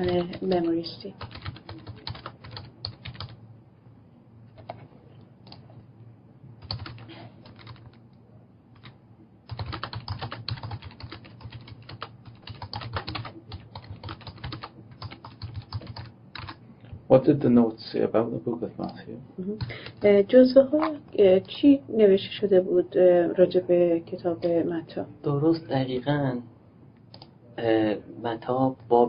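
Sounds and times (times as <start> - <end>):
typing on computer keyboard: 0.0 - 3.4, 6.6 - 8.0, 8.8 - 16.6.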